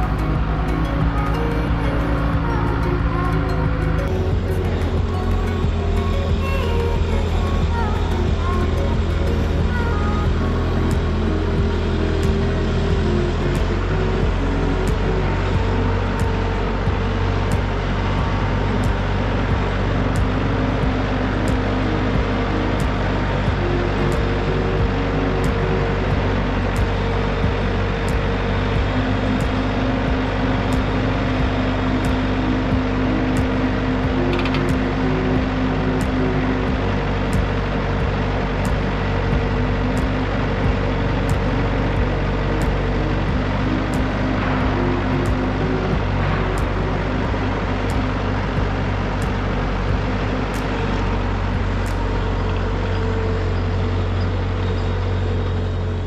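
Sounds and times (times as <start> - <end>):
engine humming steadily: 0.0 - 56.0.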